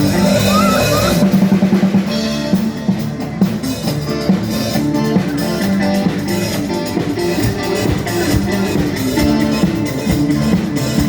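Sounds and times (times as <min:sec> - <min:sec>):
loud music through sound system: 0:00.0 - 0:01.3.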